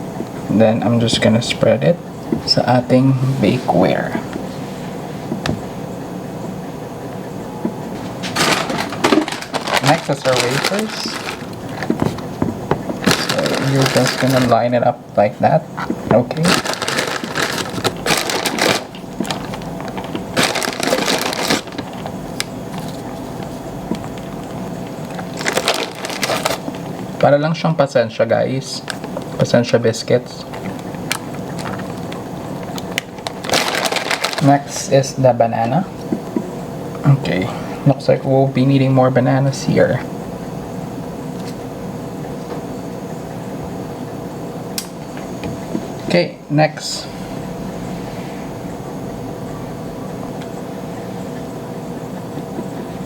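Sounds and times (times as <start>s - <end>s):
air conditioner hum: 0.0s - 53.0s
wafers crinkling: 8.2s - 14.8s, 15.8s - 27.2s, 30.6s - 34.9s.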